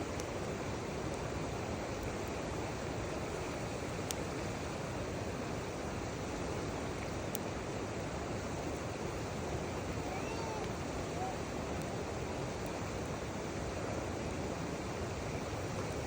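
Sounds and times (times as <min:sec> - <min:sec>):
wood fire popping: 0:00.0 - 0:04.8, 0:06.8 - 0:07.6, 0:10.5 - 0:13.7
river water rushing: 0:00.0 - 0:16.0.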